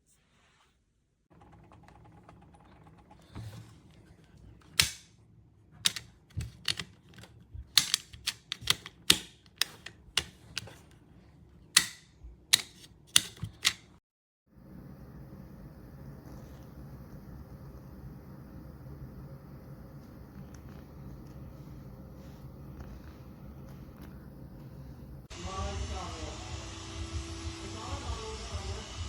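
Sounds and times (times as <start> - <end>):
faint low hum: 14.5 - 26.7.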